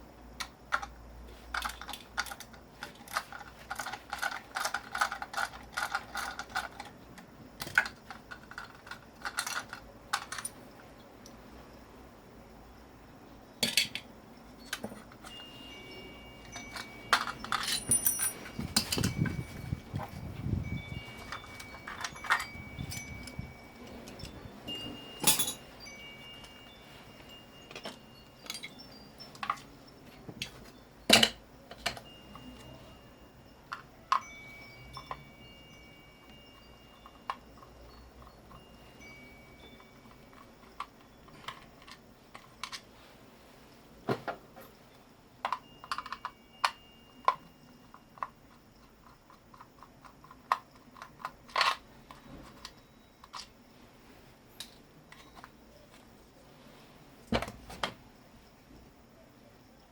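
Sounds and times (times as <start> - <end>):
small metal pieces clinking: 1.5 - 6.9, 7.6 - 10.6, 16.4 - 19.8, 21.0 - 24.4, 25.2 - 25.7, 27.6 - 29.7, 45.4 - 48.4, 49.0 - 53.5.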